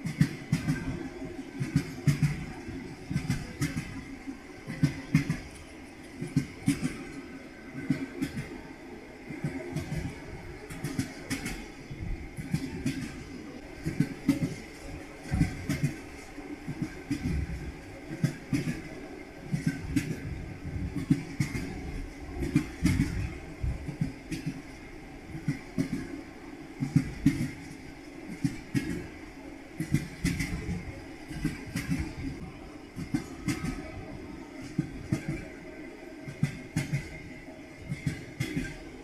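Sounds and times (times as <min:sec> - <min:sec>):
train wheels knocking on rail joints: 0:00.0 - 0:08.6, 0:09.2 - 0:26.2, 0:26.8 - 0:35.6, 0:36.2 - 0:39.0
low rumble of train carriage: 0:00.0 - 0:39.0.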